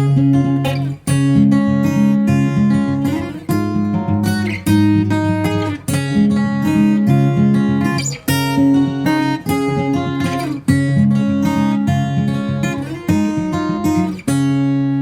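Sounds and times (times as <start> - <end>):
acoustic guitar strumming chords: 0.0 - 15.0.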